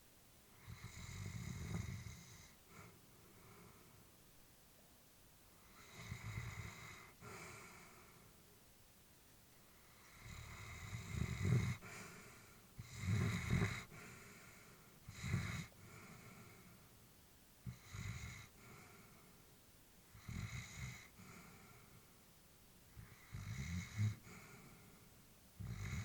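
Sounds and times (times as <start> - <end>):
dog snoring in sleep: 0.5 - 4.0, 5.6 - 8.2, 9.8 - 16.8, 17.6 - 19.3, 20.1 - 22.0, 22.9 - 26.0.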